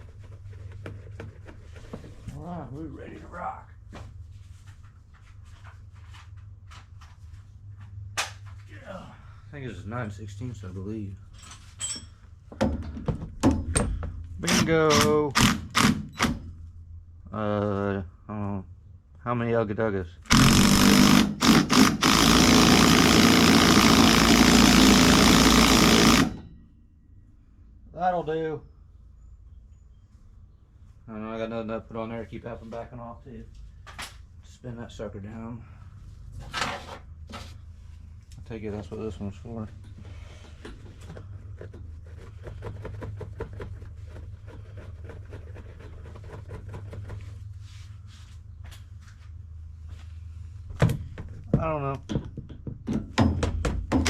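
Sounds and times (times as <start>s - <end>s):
steady low hum: 0.0s - 54.0s
impact wrench hammering: 13.4s - 16.5s, 20.3s - 26.5s, 52.9s - 54.0s.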